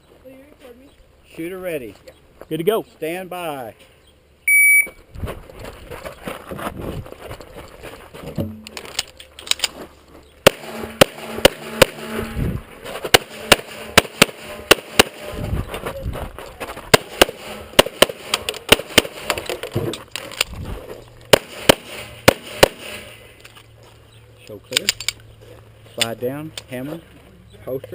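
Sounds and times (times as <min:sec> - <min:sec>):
shot timer beep: 0:04.5 - 0:05.0
rapid pistol fire: 0:10.4 - 0:12.2, 0:13.1 - 0:15.4, 0:16.9 - 0:19.4, 0:21.3 - 0:23.1.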